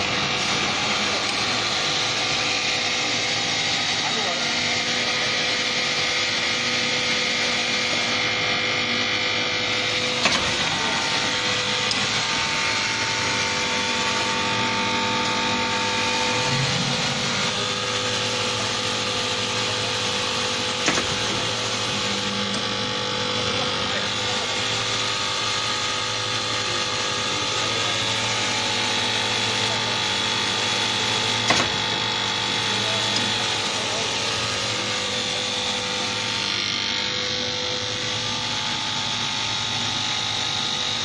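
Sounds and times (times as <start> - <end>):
nail making machine running: 0.0 - 41.0
sharp mechanical knocks: 10.2 - 11.0, 20.8 - 21.4, 31.3 - 32.1.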